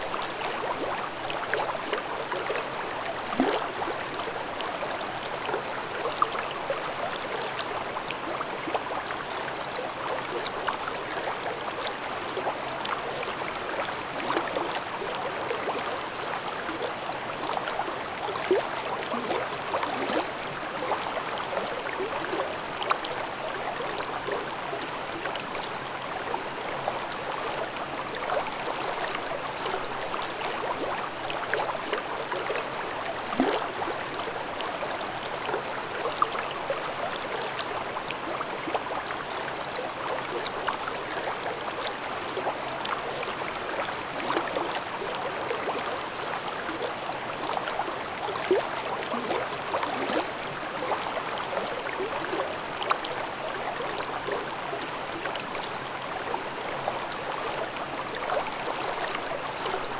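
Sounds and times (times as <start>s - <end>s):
stream babbling over rocks: 0.0s - 59.9s.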